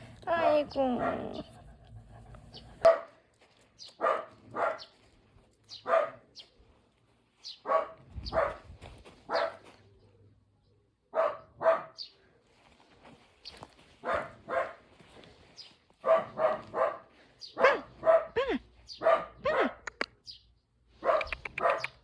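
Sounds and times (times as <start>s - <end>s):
dog barking: 1.0s - 1.5s, 2.8s - 3.2s, 4.0s - 4.9s, 5.7s - 6.3s, 7.6s - 8.6s, 9.3s - 9.7s, 11.1s - 12.1s, 14.0s - 14.9s, 16.0s - 19.9s, 21.0s - 22.0s.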